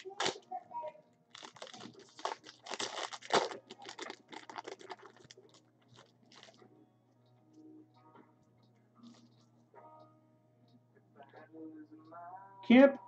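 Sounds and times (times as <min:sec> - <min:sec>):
card pack wrapper crinkling: 0:00.0 - 0:00.4, 0:01.3 - 0:06.6.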